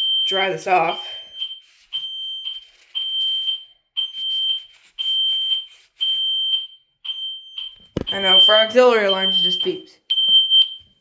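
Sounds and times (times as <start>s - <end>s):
high alarm beeps: 6.2s - 10.8s.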